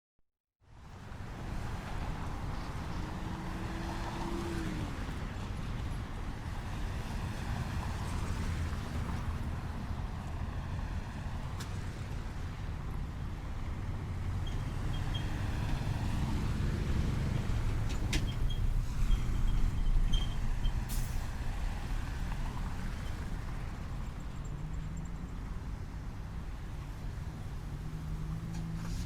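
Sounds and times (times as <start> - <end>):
traffic engines rumbling: 0.7 - 29.0
heavy vehicle passing: 14.0 - 29.0
air brakes hissing: 18.0 - 21.5.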